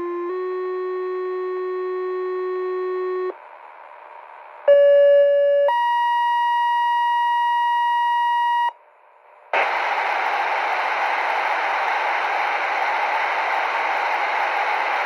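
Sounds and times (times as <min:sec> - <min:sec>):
loud radio static: 0:09.6 - 0:15.0
radio hiss: 0:09.6 - 0:15.0.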